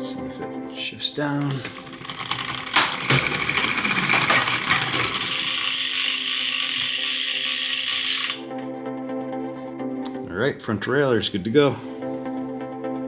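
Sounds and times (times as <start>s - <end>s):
chain clunking onto chainring: 1.4s - 8.4s
bicycle chain clicking: 1.4s - 8.5s.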